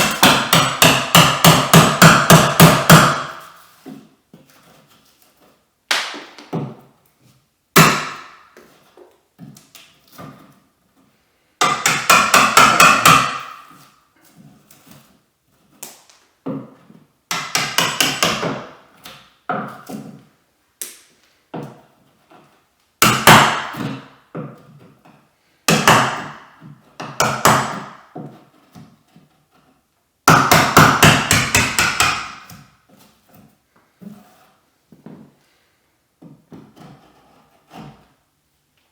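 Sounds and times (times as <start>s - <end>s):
hammer striking chisel: 0.0s - 3.6s, 7.8s - 8.4s, 11.6s - 13.8s, 17.3s - 19.8s, 23.0s - 24.1s, 25.7s - 26.4s, 27.0s - 28.1s, 30.3s - 32.7s.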